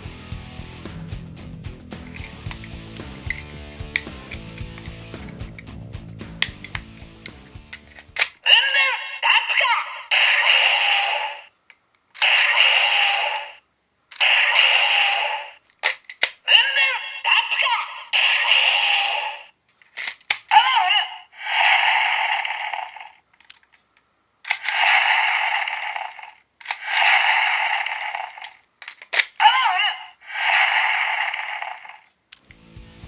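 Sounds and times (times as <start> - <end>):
plastic clicks: 2.0 - 8.6, 11.7 - 12.7, 13.3 - 14.8, 15.6 - 18.6, 19.7 - 20.8, 22.4 - 29.9
electronic toy sound effects: 7.7 - 11.5, 12.2 - 13.6, 14.2 - 15.6, 16.4 - 19.5, 20.3 - 23.2, 24.5 - 32.0
toy voice lines: 8.4 - 11.5, 12.2 - 13.6, 14.2 - 15.6, 16.4 - 19.5, 20.3 - 23.2, 24.5 - 28.6, 29.2 - 32.1.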